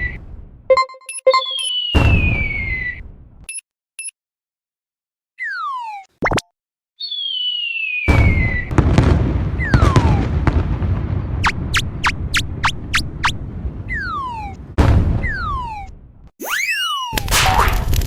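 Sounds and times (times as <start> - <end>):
rumbling blast with cracks: 0.0 - 0.7, 2.0 - 3.4, 8.1 - 16.2
cartoon falling whistle: 0.7 - 3.0, 7.0 - 8.7, 13.9 - 14.6, 15.2 - 17.7.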